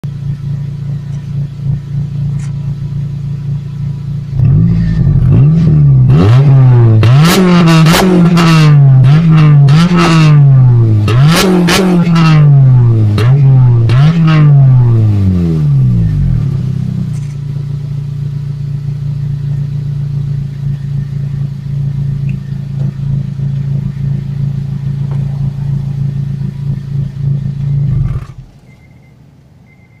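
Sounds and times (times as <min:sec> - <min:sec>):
car engine idling and revving: 0:00.0 - 0:30.0.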